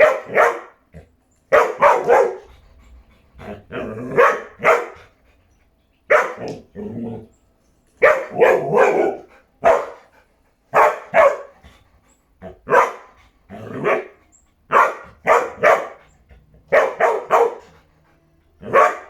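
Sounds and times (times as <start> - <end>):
dog barking: 0.0 - 0.8, 1.5 - 2.5, 4.1 - 5.0, 6.1 - 6.6, 8.0 - 10.0, 10.7 - 11.6, 12.7 - 13.1, 13.8 - 16.0, 16.7 - 17.8, 18.6 - 19.0.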